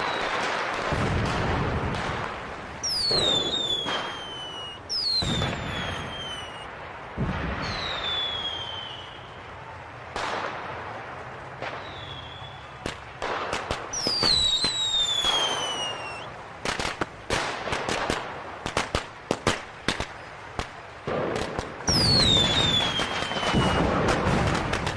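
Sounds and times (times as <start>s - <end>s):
firework bursts: 0.0s - 24.9s
firework cracks and bangs: 0.0s - 24.9s
firework whistles falling in pitch: 2.8s - 6.7s, 7.6s - 9.4s, 13.9s - 16.3s, 21.8s - 24.0s.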